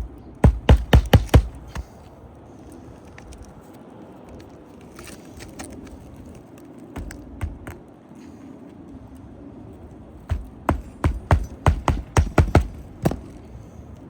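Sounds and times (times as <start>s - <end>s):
hammer driving nails: 0.0s - 2.0s, 10.3s - 13.4s.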